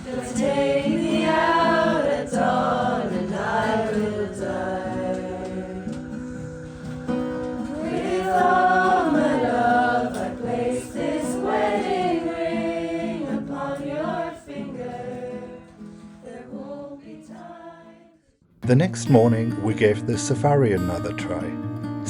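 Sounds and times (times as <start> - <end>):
sustained accompanying notes: 0.0 - 17.5
group of people singing: 0.0 - 18.2.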